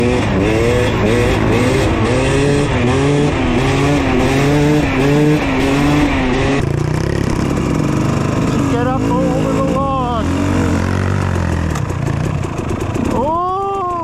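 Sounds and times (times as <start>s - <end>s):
dirt bike engine revving: 0.0s - 14.0s.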